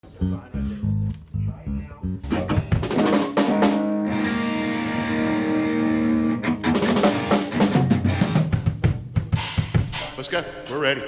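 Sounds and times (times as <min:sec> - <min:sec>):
drum kit hits: 0:02.3 - 0:04.1, 0:06.7 - 0:10.8
guitar chord ringing: 0:03.5 - 0:08.4.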